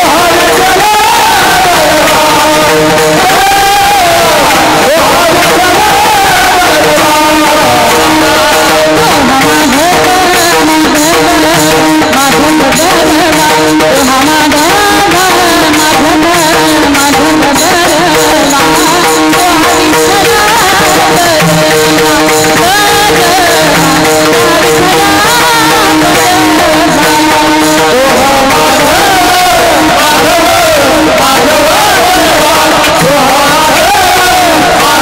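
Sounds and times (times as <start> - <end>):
hand drum percussion: 0.0 - 35.0
person singing devotional music: 0.0 - 35.0.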